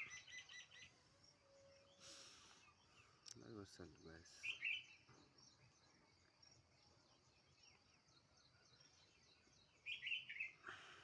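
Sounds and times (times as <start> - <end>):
bird calling slurred notes: 0.0 - 3.3
wild birds chirping faintly: 0.0 - 11.0.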